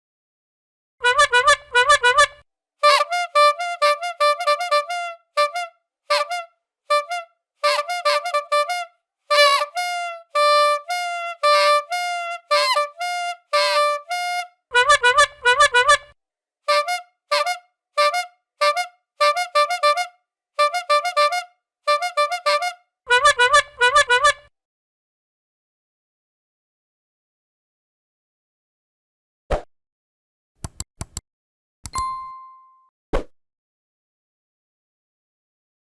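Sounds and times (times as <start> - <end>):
bicycle horn honking: 1.0 - 16.0, 16.7 - 24.5.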